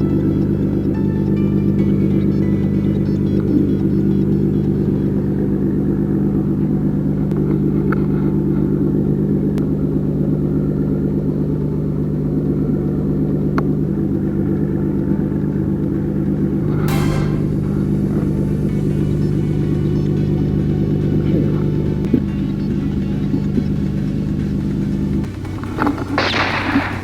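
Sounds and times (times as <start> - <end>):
engine droning: 16.8 - 27.0.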